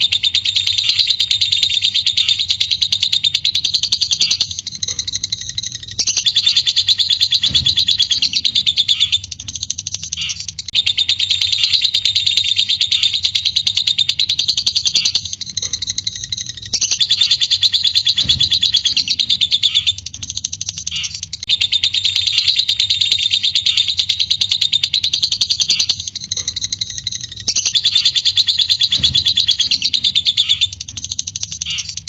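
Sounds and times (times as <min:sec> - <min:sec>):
lovebird shrill chatter: 0:00.0 - 0:32.0.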